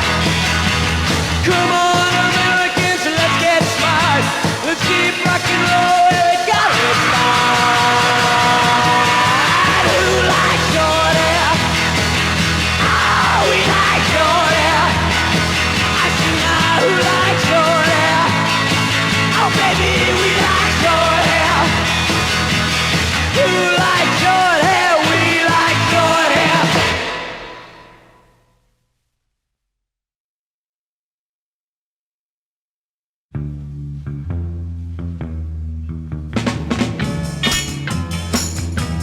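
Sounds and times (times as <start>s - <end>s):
garage rock band playing: 0.0s - 28.2s, 36.3s - 39.0s.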